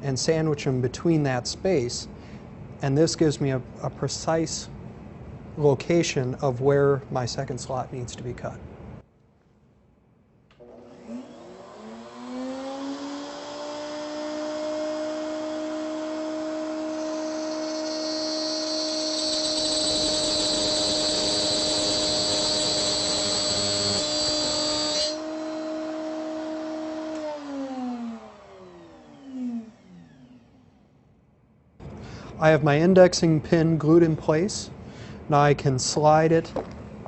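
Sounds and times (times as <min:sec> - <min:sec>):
router whining: 0:10.6 - 0:30.9
router cutting wood with hiss: 0:10.7 - 0:30.4.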